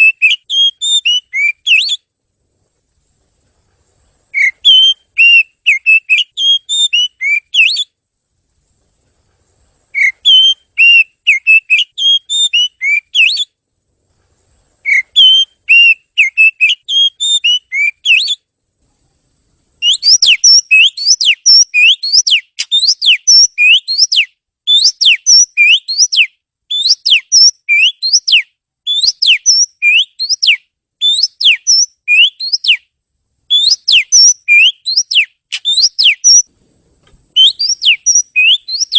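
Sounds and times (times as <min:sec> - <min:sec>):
bird singing whistled notes: 0:00.0 - 0:02.1, 0:04.3 - 0:08.0, 0:09.9 - 0:13.6, 0:14.8 - 0:18.5, 0:19.8 - 0:32.9, 0:33.5 - 0:36.5, 0:37.3 - 0:38.9.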